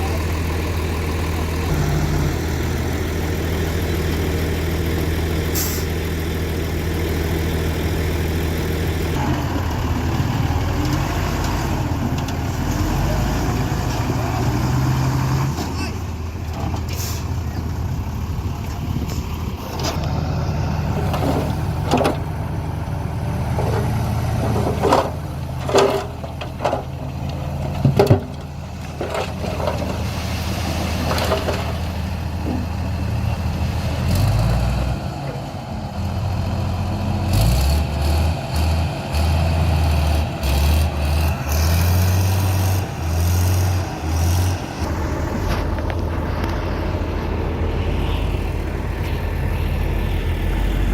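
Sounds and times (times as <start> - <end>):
diesel truck engines droning: 0.0 - 50.9
engine revving in surges: 8.9 - 16.0, 28.9 - 50.9
metallic knocks and clanks: 23.5 - 30.0.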